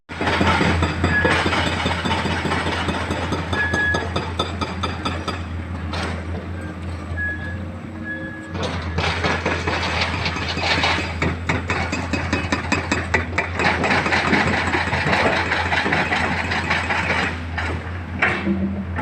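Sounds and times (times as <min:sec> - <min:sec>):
diesel engine humming: 0:00.2 - 0:11.9.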